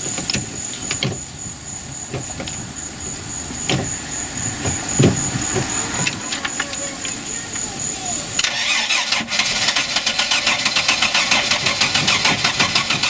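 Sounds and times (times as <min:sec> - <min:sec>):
knocks and thumps: 0:00.0 - 0:07.2.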